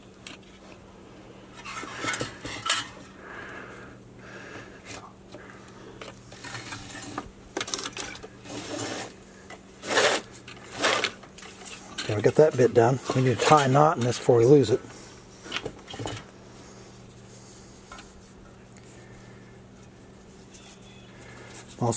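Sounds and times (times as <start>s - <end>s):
rope scraping on starter housing: 6.0s - 7.4s, 8.1s - 18.5s.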